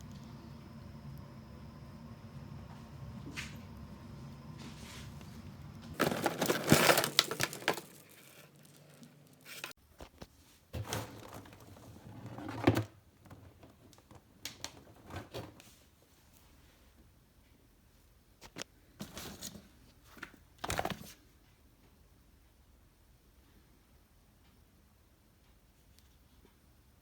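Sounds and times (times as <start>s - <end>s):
rustling and crinkling: 3.2s - 16.9s.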